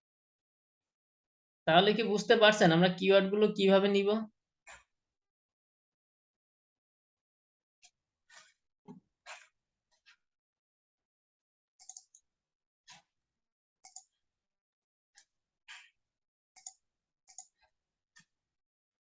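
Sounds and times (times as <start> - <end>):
computer mouse clicks: 11.8 - 12.2, 13.9 - 14.1, 16.6 - 17.6.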